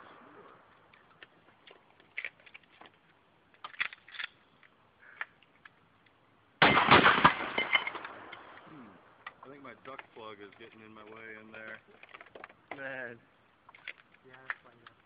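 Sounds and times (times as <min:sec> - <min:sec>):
shotgun blast: 0:06.6 - 0:08.6.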